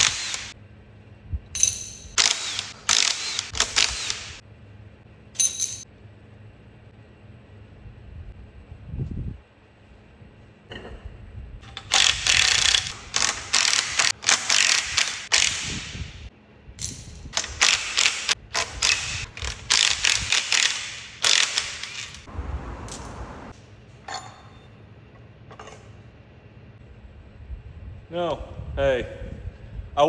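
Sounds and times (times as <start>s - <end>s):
ratchet wrench spinning bolts: 1.6s - 4.4s, 11.6s - 15.8s, 16.8s - 22.3s.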